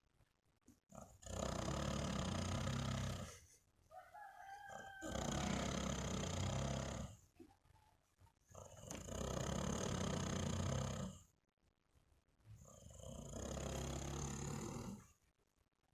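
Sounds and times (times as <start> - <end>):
person snoring: 1.0 - 3.4, 4.7 - 7.2, 8.6 - 11.2, 12.7 - 15.1
faint rooster crowing: 3.9 - 5.8.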